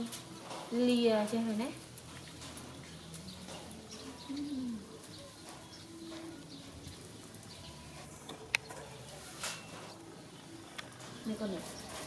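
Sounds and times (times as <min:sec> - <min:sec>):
dove cooing: 0:02.8 - 0:12.0.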